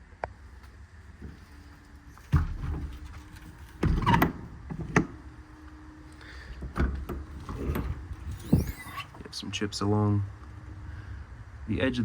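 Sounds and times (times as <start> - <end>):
compartment doors clunking: 2.3 - 5.2, 6.5 - 9.2.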